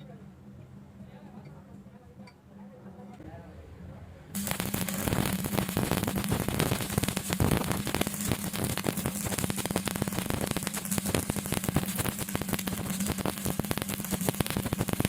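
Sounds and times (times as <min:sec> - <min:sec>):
low electrical hum: 0:00.0 - 0:15.0
welding arc crackling and sizzling: 0:04.4 - 0:15.0.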